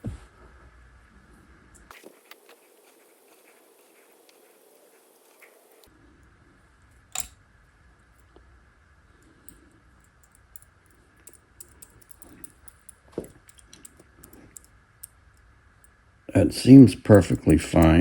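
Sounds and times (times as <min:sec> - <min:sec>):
small parts and tools clicking: 0:06.9 - 0:07.4, 0:09.4 - 0:16.0.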